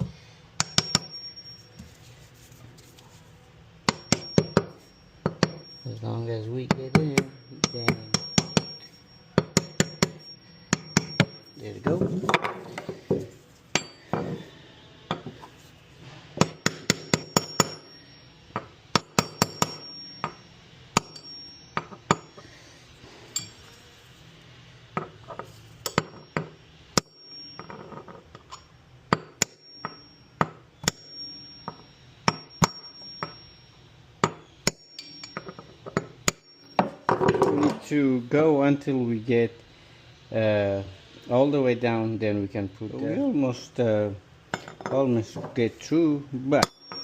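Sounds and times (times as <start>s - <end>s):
hammer tapping metal: 0.6s - 1.8s, 3.8s - 6.0s, 6.6s - 14.5s, 16.4s - 22.4s, 25.0s - 37.9s, 46.6s - 47.0s.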